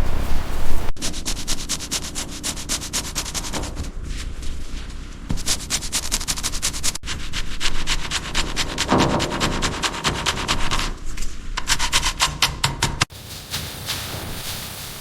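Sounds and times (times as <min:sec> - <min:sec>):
fast rhythmic rubbing strokes: 0:00.7 - 0:11.0.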